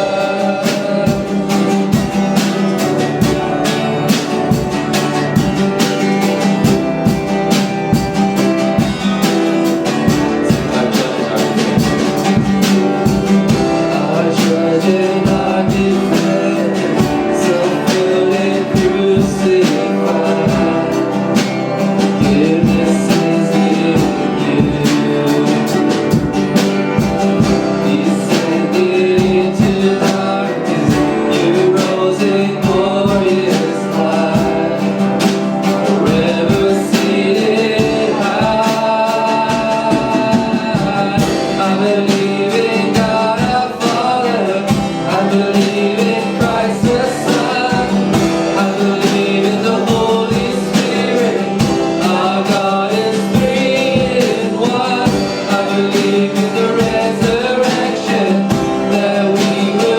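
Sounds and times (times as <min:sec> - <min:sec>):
live band with guitar: 0:00.0 - 0:59.9.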